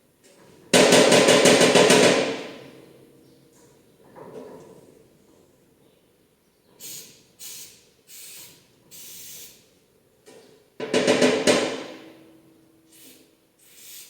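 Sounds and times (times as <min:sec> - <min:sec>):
hissing puffs of blown air: 0:06.8 - 0:09.6, 0:12.9 - 0:14.0.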